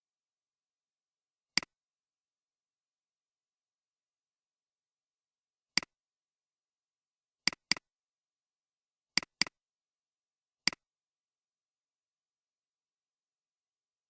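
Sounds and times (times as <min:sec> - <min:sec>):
computer mouse clicks: 0:07.5 - 0:07.8, 0:09.2 - 0:09.6.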